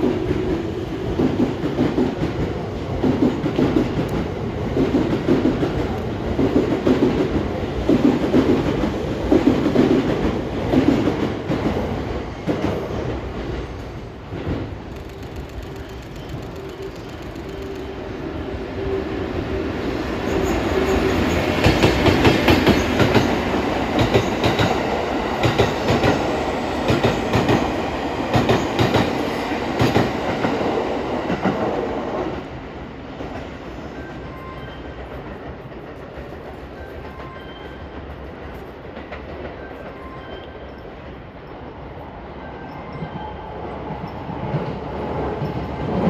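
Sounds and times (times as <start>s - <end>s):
train rumble: 0.0s - 37.4s
train wheels clattering: 20.3s - 31.8s.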